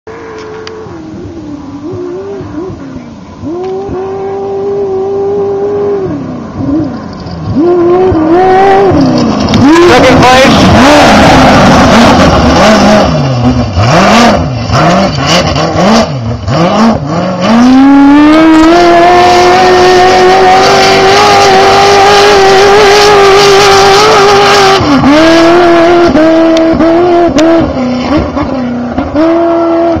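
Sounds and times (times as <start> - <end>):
race car engine revving: 0.1 - 30.0.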